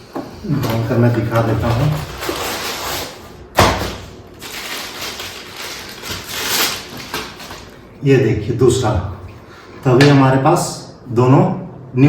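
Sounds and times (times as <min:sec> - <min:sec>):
hands rummaging objects: 0:04.4 - 0:07.8.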